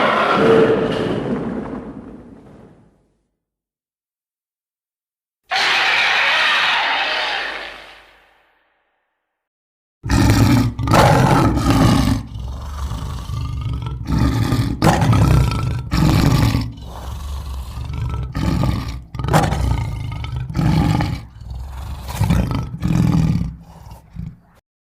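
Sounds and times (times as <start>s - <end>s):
creature roaring and growling: 0.0s - 1.0s, 5.5s - 8.3s, 10.0s - 24.6s.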